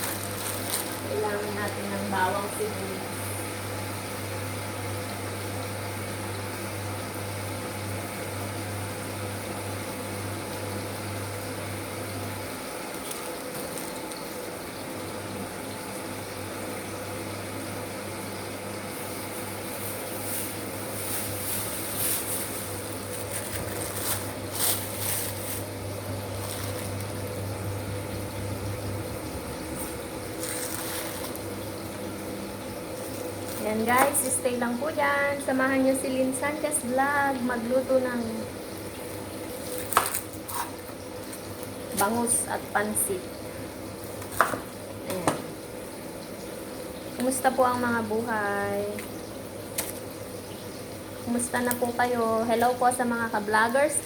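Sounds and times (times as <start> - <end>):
water splashing in a sink: 0.0 - 2.6, 12.2 - 35.2, 36.3 - 54.0
steady low hum: 18.6 - 39.4.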